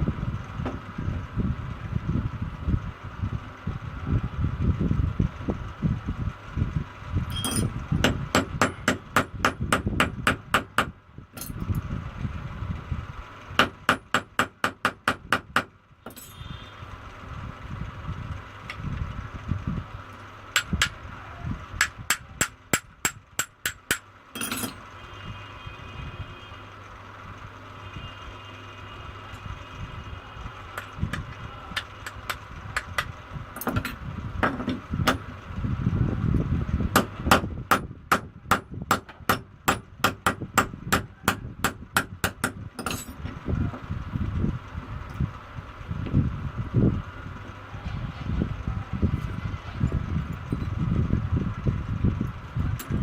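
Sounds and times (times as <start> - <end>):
hammer tapping on metal: 21.8 - 24.8.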